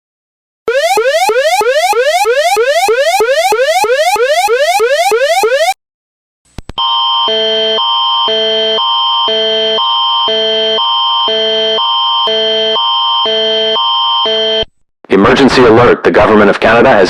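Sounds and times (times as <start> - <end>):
emergency alert attention tone: 0.7 - 5.8, 6.8 - 14.7
rapid rising electronic chirps: 0.7 - 5.8.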